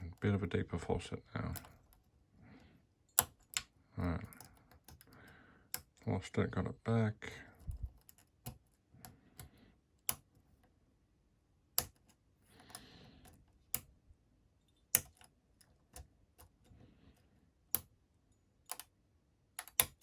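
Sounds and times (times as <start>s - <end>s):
padlock pins clicking: 1.4s - 2.1s, 3.1s - 6.0s, 7.6s - 10.7s, 11.7s - 14.0s, 14.7s - 16.7s, 17.7s - 20.0s.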